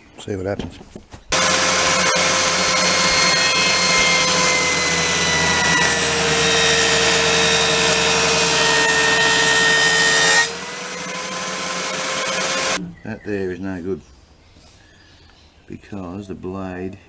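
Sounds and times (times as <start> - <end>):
circular saw motor running: 1.3 - 12.8
saw blade cutting timber: 1.3 - 12.8.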